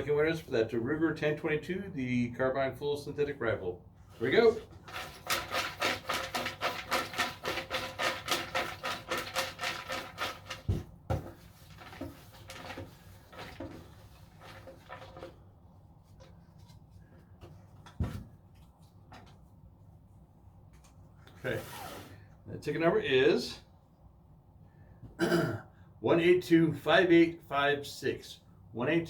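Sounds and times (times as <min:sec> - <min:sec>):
raffle tickets clattering: 0:04.2 - 0:10.7.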